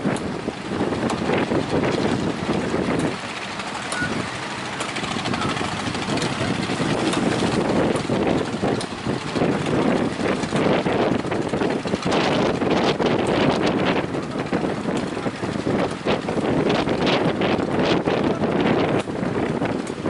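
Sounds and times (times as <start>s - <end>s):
speedboat engine running: 0.0s - 20.0s
wind rushing over microphone: 0.0s - 20.0s.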